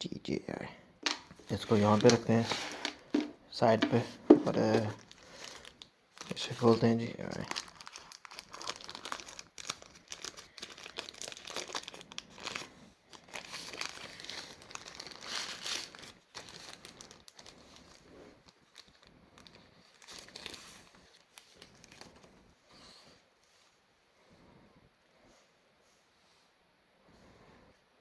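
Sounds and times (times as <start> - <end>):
packaging crinkling and tearing: 1.0 - 22.4.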